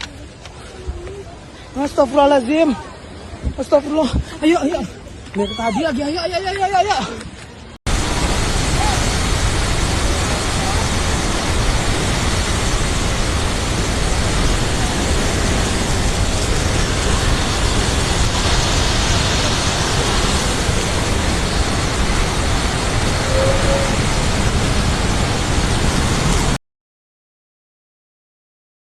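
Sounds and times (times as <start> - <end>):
waterfall rushing: 7.9 - 26.6.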